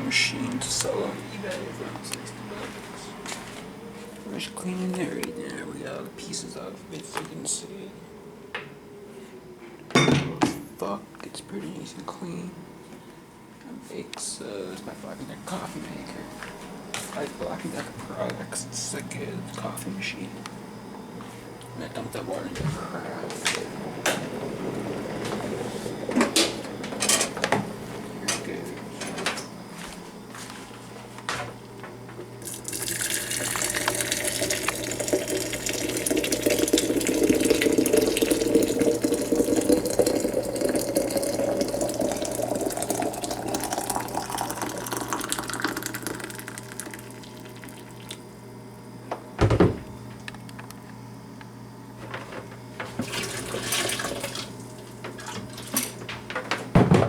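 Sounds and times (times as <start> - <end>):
water pouring into carafe: 32.4 - 48.2, 53.0 - 55.8.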